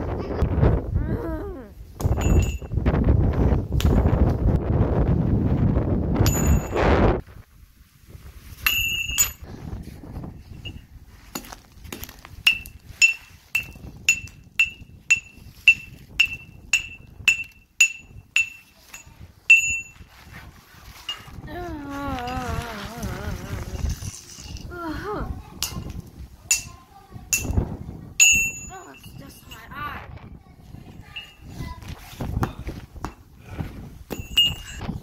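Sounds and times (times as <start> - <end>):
grade-crossing bell ringing: 2.2 - 2.8, 6.2 - 6.8, 12.5 - 20.2, 28.2 - 29.9, 30.9 - 31.5, 34.1 - 34.8.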